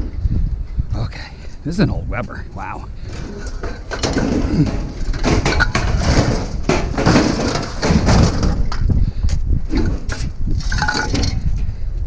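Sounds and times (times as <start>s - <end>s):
metal grill parts clattering: 3.1s - 8.9s, 9.7s - 11.4s.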